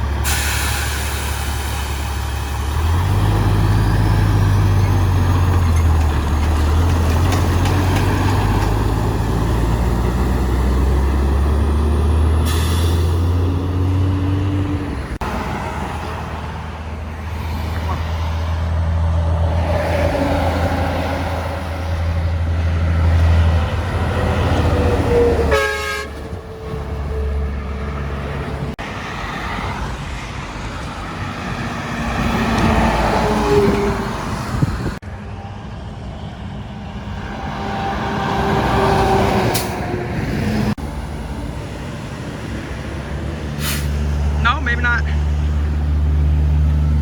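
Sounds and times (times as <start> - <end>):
trucks passing on highway: 0.0 - 47.0
truck horn blast: 25.1 - 26.4.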